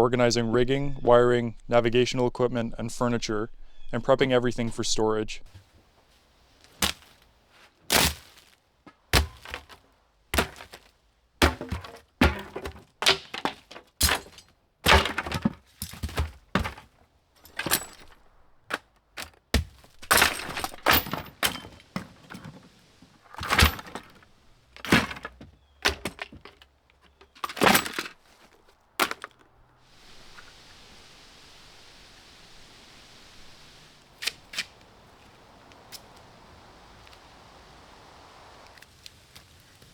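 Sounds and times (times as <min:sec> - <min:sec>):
scraping and rattling: 0:06.6 - 0:29.4
objects knocking and clunking: 0:08.8 - 0:29.4.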